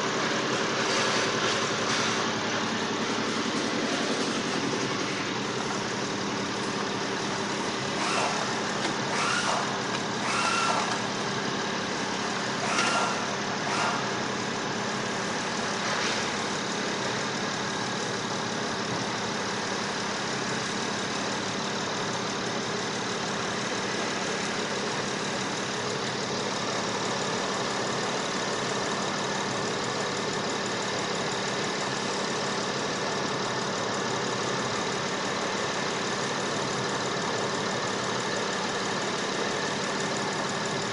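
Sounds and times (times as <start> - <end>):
engine idling: 0.0 - 40.9.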